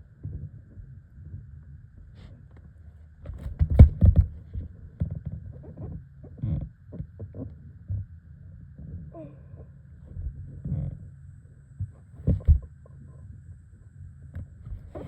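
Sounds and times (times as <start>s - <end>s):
knocks on a small boat: 3.3s - 4.4s, 12.3s - 12.7s.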